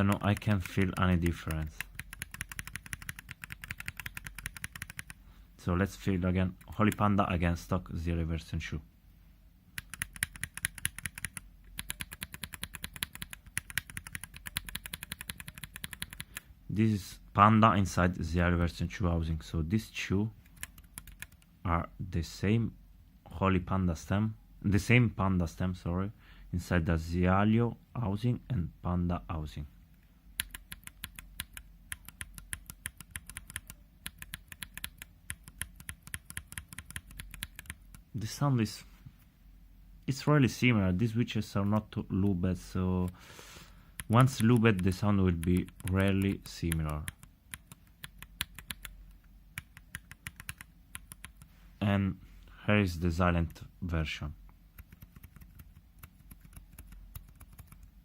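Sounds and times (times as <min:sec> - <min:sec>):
mechanical keyboard clacking: 0:00.0 - 0:05.2, 0:09.8 - 0:16.4, 0:20.5 - 0:21.4, 0:30.4 - 0:38.0, 0:44.0 - 0:49.0, 0:49.6 - 0:51.4, 0:54.8 - 0:57.9.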